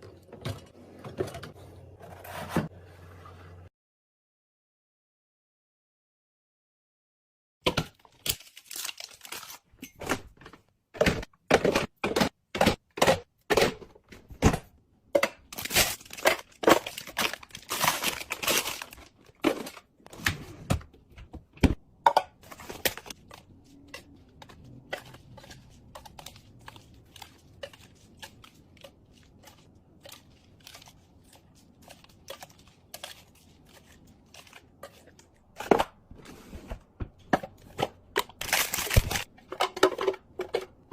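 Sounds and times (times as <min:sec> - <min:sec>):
packaging crinkling and tearing: 0:08.1 - 0:09.7, 0:15.5 - 0:19.7, 0:38.4 - 0:39.3
plastic containers clicking and knocking: 0:10.4 - 0:18.2, 0:37.1 - 0:40.9.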